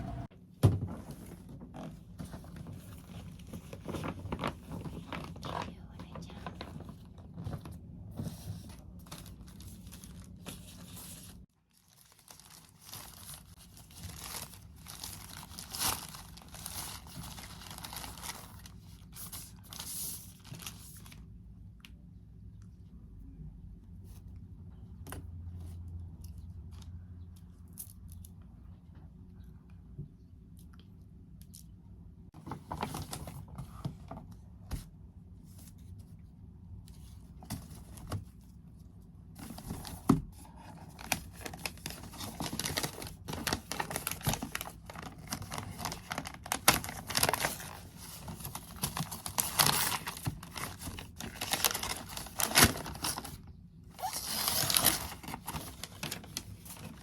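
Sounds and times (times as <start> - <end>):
packaging crinkling and tearing: 8.7 - 21.2, 39.4 - 57.0.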